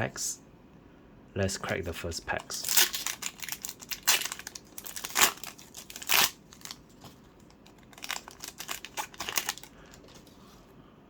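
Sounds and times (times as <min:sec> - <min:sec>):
foil wrapper ripping and crinkling: 0:02.4 - 0:10.3.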